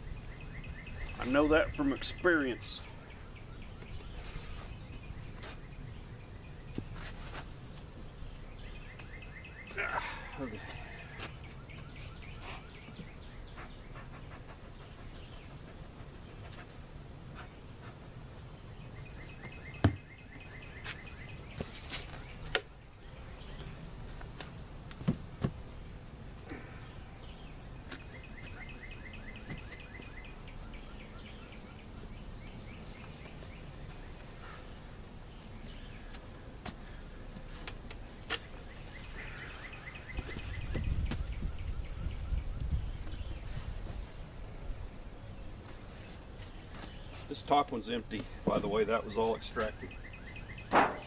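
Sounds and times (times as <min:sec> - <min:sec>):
songbird chirping rapidly: 0:00.0 - 0:24.2, 0:25.6 - 0:37.3, 0:38.0 - 0:51.0
knocks on wooden hive boxes: 0:19.8 - 0:20.1, 0:50.7 - 0:51.0.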